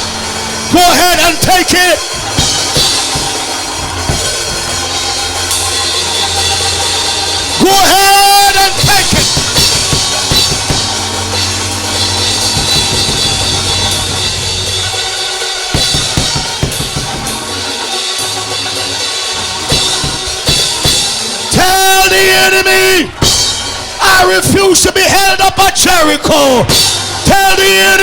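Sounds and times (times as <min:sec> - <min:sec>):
low bass notes: 0:00.0 - 0:21.3
drum kit hits: 0:00.0 - 0:24.6, 0:26.6 - 0:28.0
band playing upbeat music: 0:00.0 - 0:28.0.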